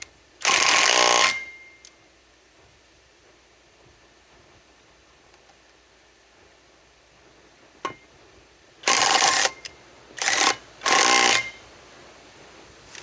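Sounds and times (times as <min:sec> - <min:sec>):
impact wrench bursts: 0:00.0 - 0:01.6, 0:08.8 - 0:11.6.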